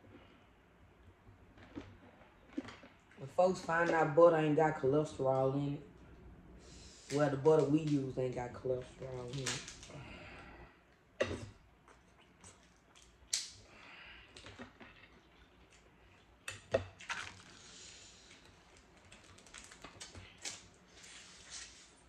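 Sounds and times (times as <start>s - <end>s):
seafood shells cracking: 12.9s - 13.6s.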